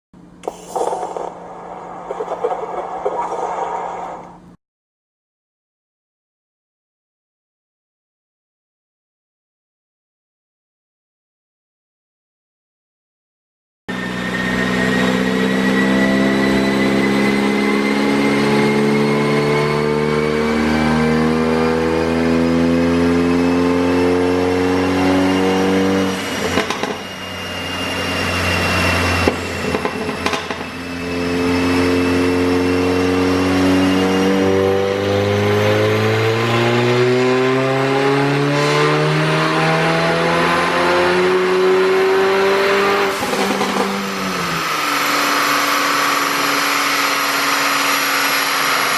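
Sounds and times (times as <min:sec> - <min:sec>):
high turbo whine: 0:00.2 - 0:04.6, 0:13.9 - 0:48.9
car engine revving hard: 0:14.0 - 0:48.9.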